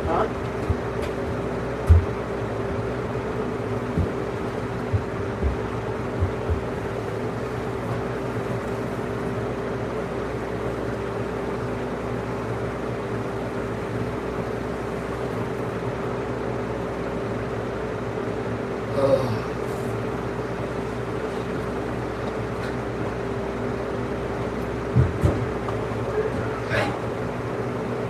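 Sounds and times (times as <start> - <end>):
soft low thumps: 0.0 - 7.0, 24.9 - 25.8
steady mechanical hum: 0.0 - 28.0.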